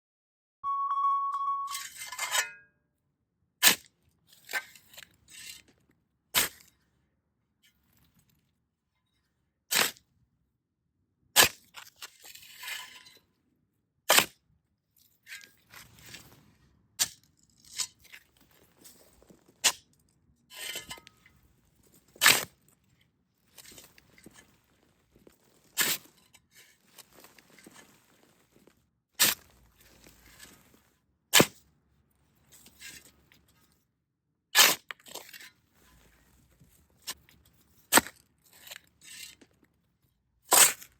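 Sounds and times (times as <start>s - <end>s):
shovel scraping dirt: 22.1s - 22.6s, 23.5s - 31.6s, 37.0s - 39.4s, 40.5s - 40.9s.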